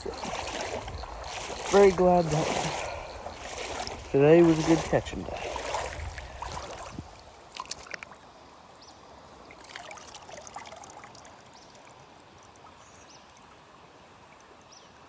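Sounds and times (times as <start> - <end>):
water splashing: 0.0 - 8.3, 9.5 - 12.0
creek water trickling: 0.0 - 15.0.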